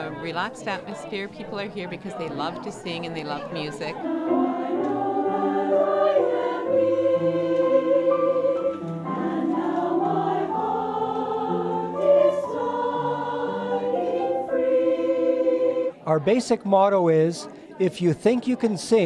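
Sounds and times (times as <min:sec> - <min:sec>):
choir singing a cappella: 0:00.0 - 0:16.7.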